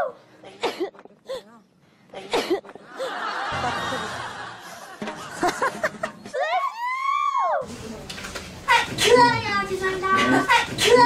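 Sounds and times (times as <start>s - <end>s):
people laughing together: 2.7s - 6.5s.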